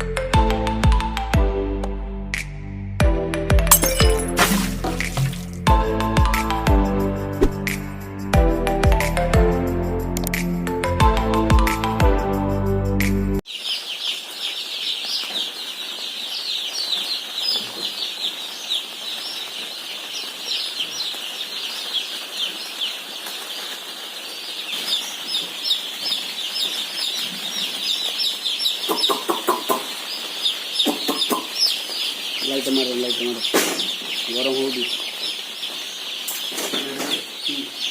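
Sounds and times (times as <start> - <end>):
chicks peeping: 13.4 - 37.9.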